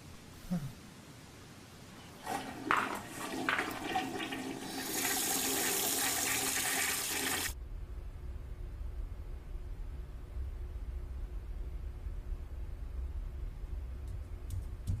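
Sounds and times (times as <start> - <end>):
low hum: 7.6 - 14.8.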